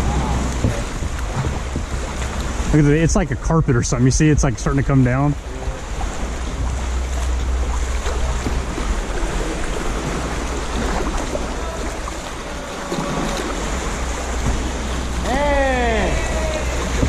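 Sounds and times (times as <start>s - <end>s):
low rumble: 0.0s - 17.0s
water lapping around a kayak: 0.0s - 17.0s.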